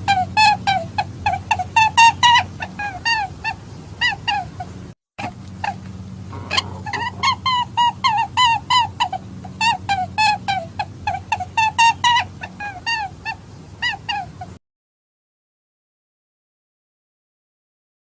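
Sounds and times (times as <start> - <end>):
short pitched animal calls: 5.2 - 12.2.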